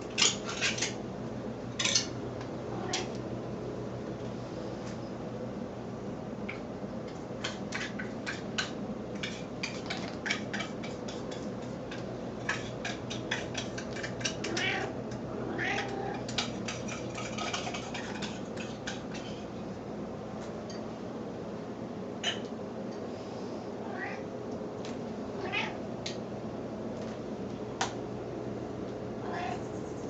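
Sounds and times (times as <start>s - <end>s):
steady low hum: 0.0s - 30.0s
cat meowing: 14.5s - 14.9s, 15.5s - 16.2s, 23.9s - 24.2s, 25.4s - 25.8s, 29.2s - 29.7s.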